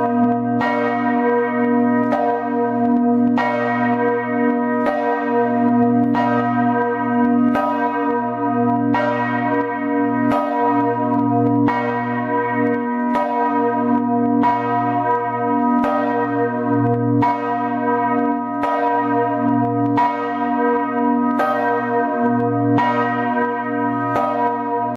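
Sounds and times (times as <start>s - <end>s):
church bell ringing: 0.0s - 24.9s.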